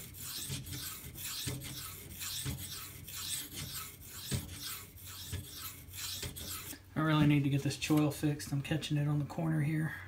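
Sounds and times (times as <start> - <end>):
knife scraping on whetstone: 0.0 - 6.8.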